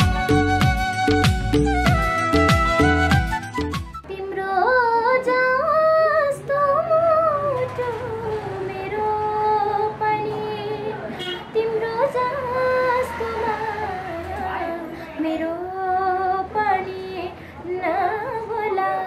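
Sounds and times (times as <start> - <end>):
soft instrumental accompaniment: 0.0 - 4.6
woman singing slow melody: 4.0 - 19.0.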